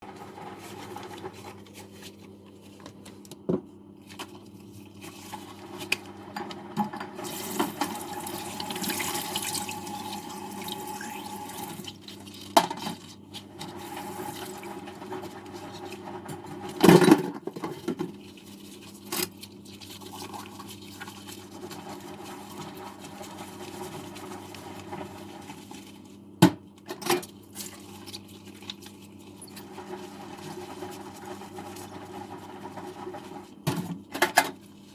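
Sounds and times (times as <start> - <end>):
water running into sink: 7.0 - 12.3.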